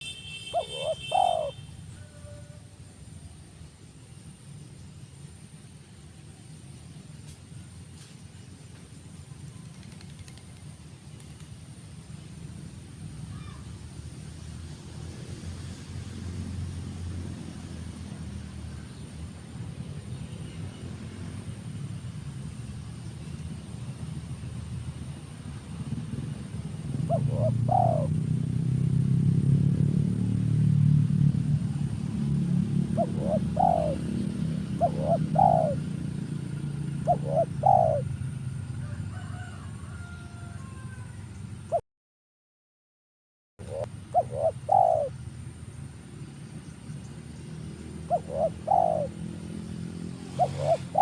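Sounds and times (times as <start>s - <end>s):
dove cooing: 0.4s - 2.6s, 26.9s - 28.2s, 32.8s - 36.1s, 36.8s - 38.2s, 43.6s - 45.1s, 48.0s - 49.3s, 50.2s - 51.0s.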